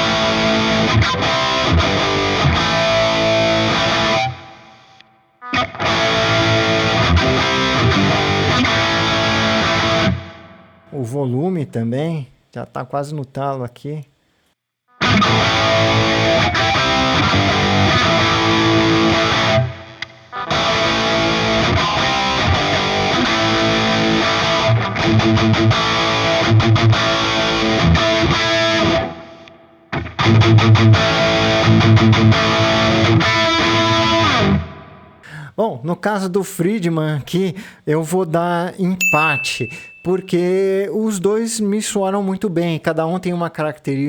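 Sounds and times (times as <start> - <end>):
distorted electric guitar: 0.0 - 10.8, 15.0 - 35.2.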